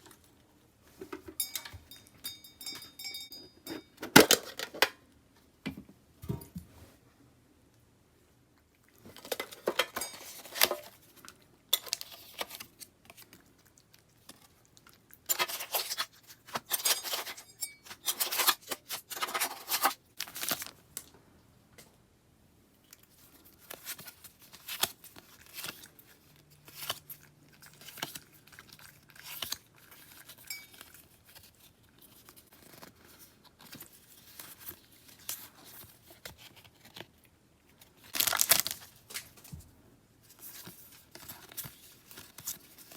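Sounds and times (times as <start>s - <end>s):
packaging ripping and rustling: 15.3s - 17.4s, 18.0s - 20.8s, 23.3s - 39.4s, 40.3s - 42.9s.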